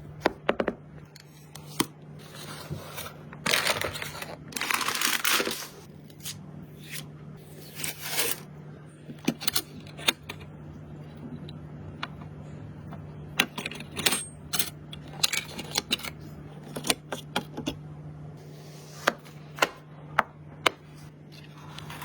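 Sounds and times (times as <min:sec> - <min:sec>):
steady low hum: 0:00.0 - 0:22.0
packaging clicks and knocks: 0:03.4 - 0:05.7
packaging crinkling and tearing: 0:03.4 - 0:05.9.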